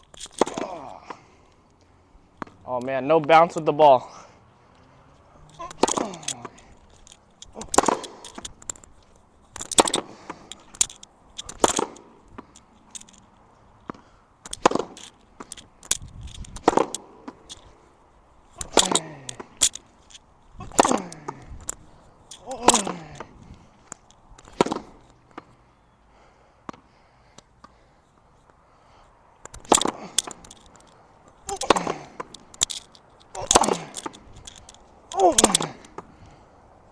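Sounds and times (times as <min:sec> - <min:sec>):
racket hitting tennis ball: 0:00.2 - 0:01.2, 0:05.5 - 0:06.8, 0:07.4 - 0:08.9, 0:09.6 - 0:10.8, 0:11.4 - 0:12.5, 0:13.9 - 0:15.5, 0:16.5 - 0:17.6, 0:18.6 - 0:19.6, 0:20.6 - 0:21.7, 0:22.4 - 0:25.2, 0:29.5 - 0:30.5, 0:31.4 - 0:32.7, 0:33.3 - 0:34.4.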